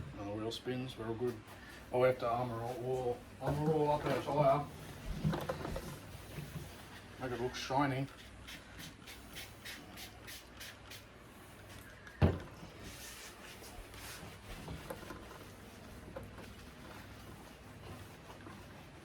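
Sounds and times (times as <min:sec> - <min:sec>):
spray bottle hissing: 0:08.2 - 0:11.8.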